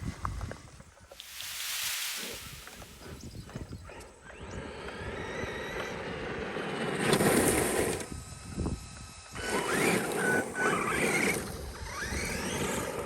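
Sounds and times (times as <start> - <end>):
rc truck motor whirring: 4.2 - 13.0.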